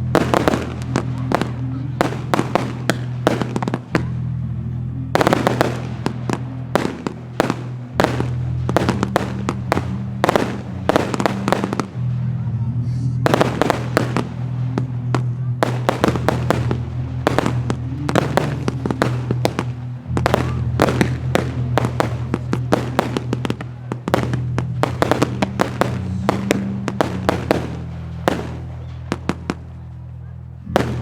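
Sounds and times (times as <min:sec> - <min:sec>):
fireworks bangs and crackles: 0:00.0 - 0:31.0
music with low notes: 0:00.0 - 0:31.0.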